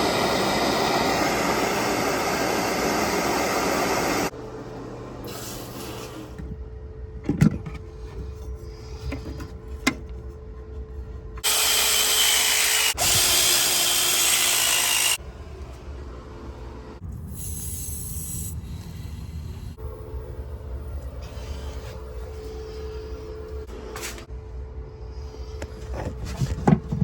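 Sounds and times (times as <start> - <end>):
power tool running: 11.4 - 15.2.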